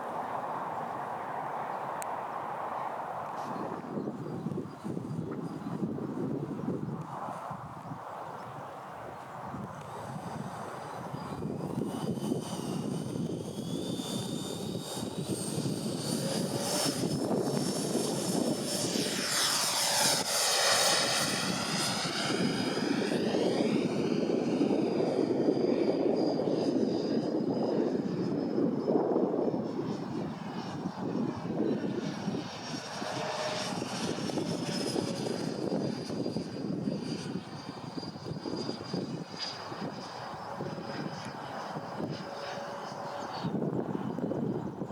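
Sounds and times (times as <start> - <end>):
model jet fans whining: 3.5 - 44.9.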